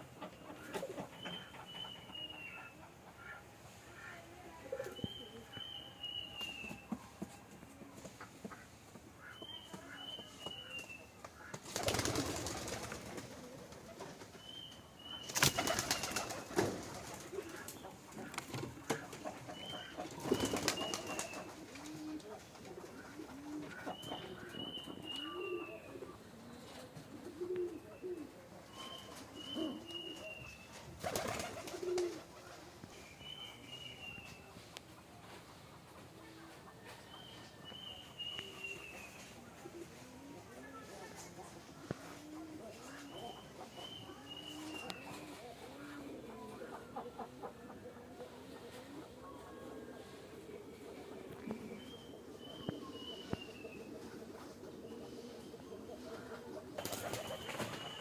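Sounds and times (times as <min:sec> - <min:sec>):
pigeons cooing softly: 0:00.0 - 0:58.0
wings flapping: 0:11.3 - 0:14.4, 0:15.2 - 0:23.8, 0:30.7 - 0:32.5, 0:56.7 - 0:58.0.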